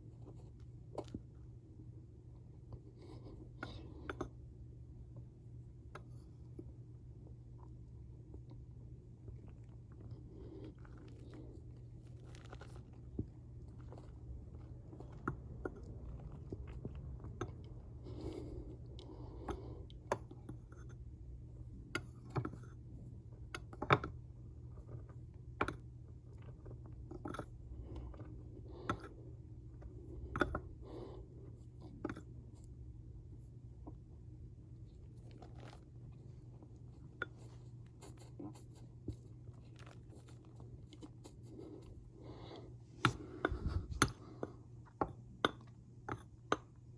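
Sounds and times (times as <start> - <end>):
steady low hum: 0.0 - 46.9
cornstarch powder crunching: 9.3 - 18.0, 34.6 - 42.1.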